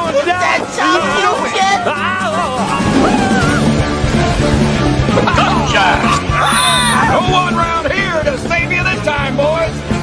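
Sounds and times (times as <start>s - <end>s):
rock music: 1.8s - 8.0s.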